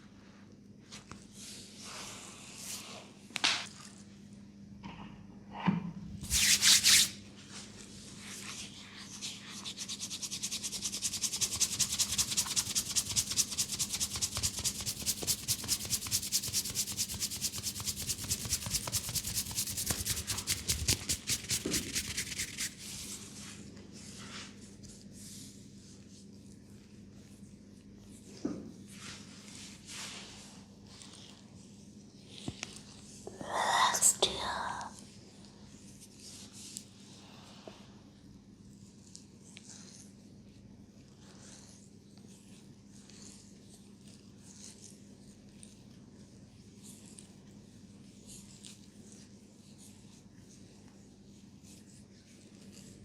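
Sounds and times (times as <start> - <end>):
hands rubbing over hair: 6.2 - 24.6, 29.0 - 31.2.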